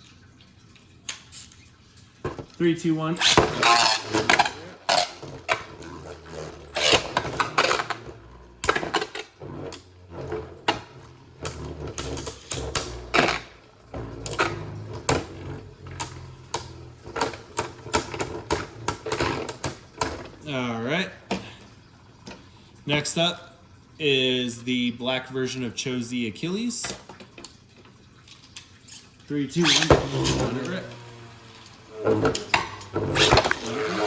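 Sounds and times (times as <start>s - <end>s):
spinning tops whirring: 2.2s - 20.7s, 29.5s - 34.0s.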